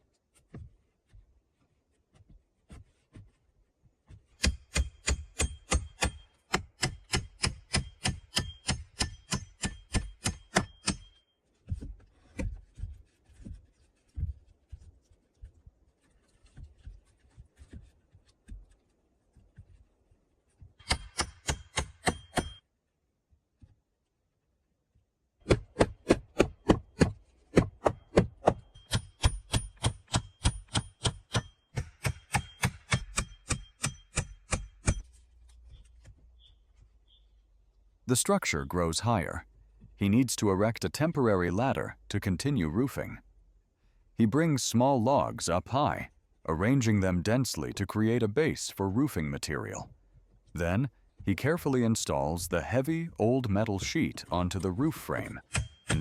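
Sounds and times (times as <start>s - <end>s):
hand tool striking wood: 4.1s - 11.2s, 20.8s - 22.6s, 25.5s - 35.1s, 55.4s - 56.0s.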